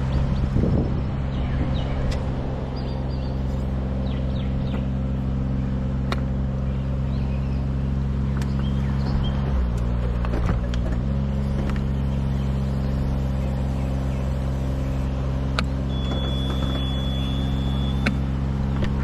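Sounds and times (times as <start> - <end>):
engine running at low speed: 0.0 - 19.0.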